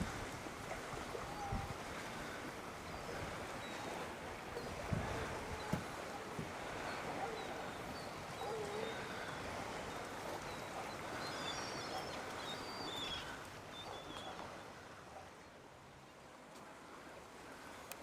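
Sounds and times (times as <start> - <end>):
water noise: 0.0 - 18.0
wind: 0.0 - 18.0
faint bird calls: 1.2 - 15.6.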